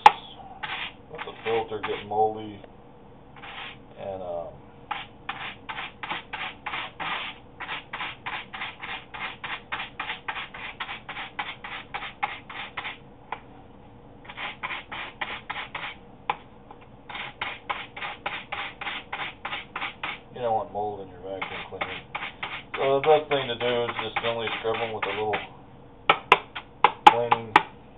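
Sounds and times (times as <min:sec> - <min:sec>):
brush scrubbing filter pleats: 0:00.0 - 0:02.2, 0:21.4 - 0:25.5.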